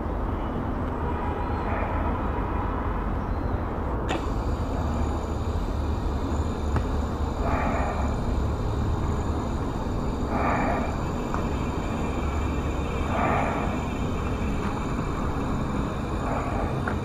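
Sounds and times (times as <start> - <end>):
steady low rumble: 3.7 - 17.0.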